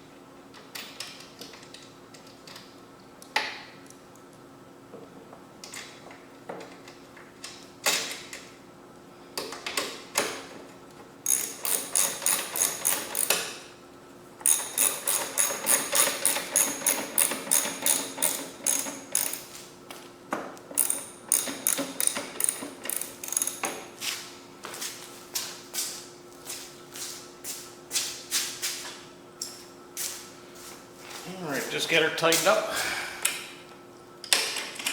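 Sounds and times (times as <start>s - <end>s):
ratchet wrench clicking: 11.3s - 13.4s, 14.4s - 19.5s, 20.8s - 23.7s
knocks of tools and metal: 14.4s - 19.5s, 20.3s - 23.9s.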